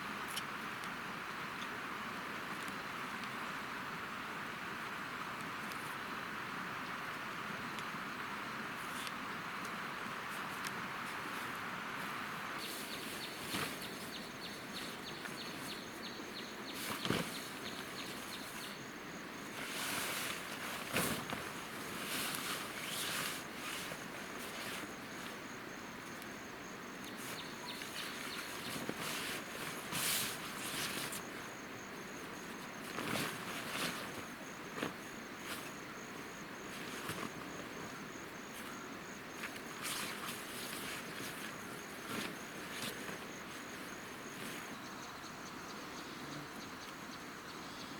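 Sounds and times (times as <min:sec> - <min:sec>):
rustling footsteps: 0:12.1 - 0:16.0, 0:19.4 - 0:25.6, 0:27.1 - 0:44.8
insect chirping: 0:12.5 - 0:47.9
bird chirping: 0:27.0 - 0:29.2.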